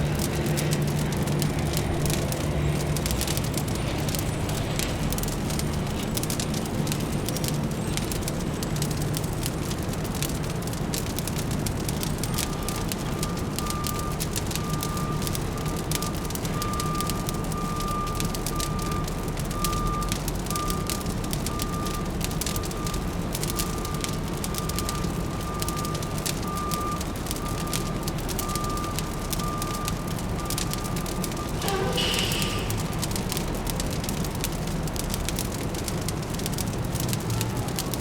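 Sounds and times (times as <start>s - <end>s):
fireplace crackling: 0.0s - 16.5s, 27.0s - 38.0s
low hum of city traffic: 0.0s - 38.0s
reversing alarm beeping: 12.4s - 33.4s.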